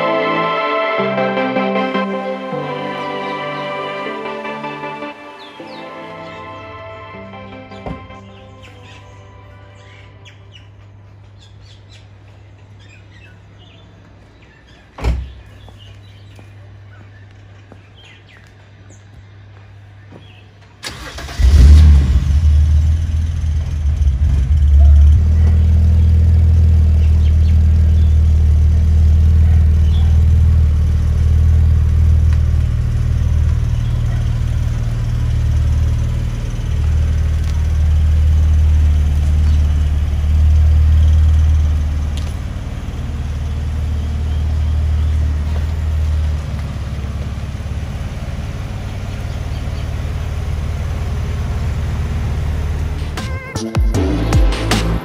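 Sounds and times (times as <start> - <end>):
car engine starting and idling: 0.0 - 10.9, 20.8 - 53.2.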